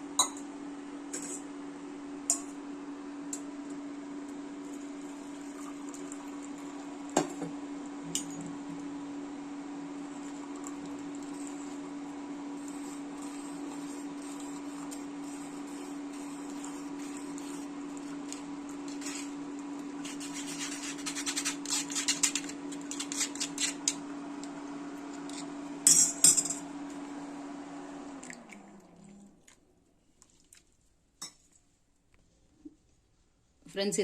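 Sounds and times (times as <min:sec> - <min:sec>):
motor hum: 0:22.4 - 0:29.8.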